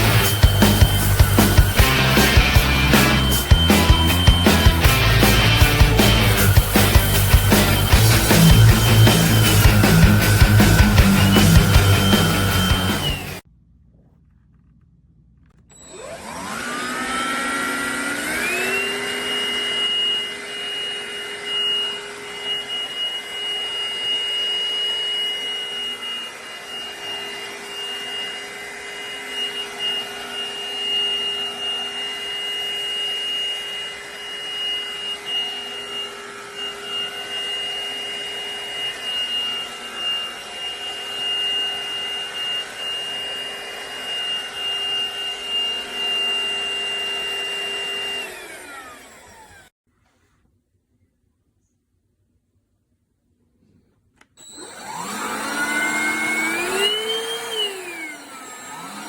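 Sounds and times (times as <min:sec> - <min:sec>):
stick vacuum running: 0:00.0 - 0:13.4, 0:15.7 - 0:49.7, 0:54.2 - 0:59.0.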